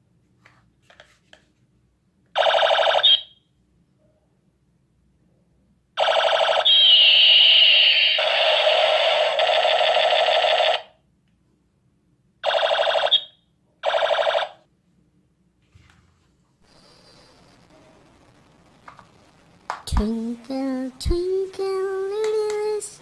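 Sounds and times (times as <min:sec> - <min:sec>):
short electronic bursts: 0:06.0 - 0:10.9
toy gun electronic zap: 0:06.0 - 0:10.9.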